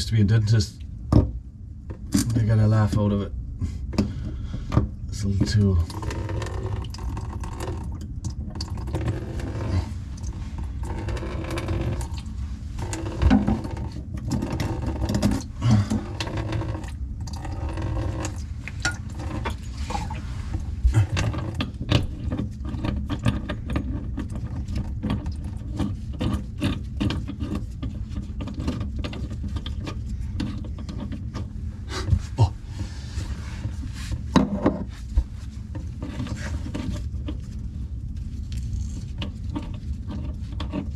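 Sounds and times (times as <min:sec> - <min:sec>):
steady low rumble: 0:00.0 - 0:26.4, 0:29.4 - 0:40.9.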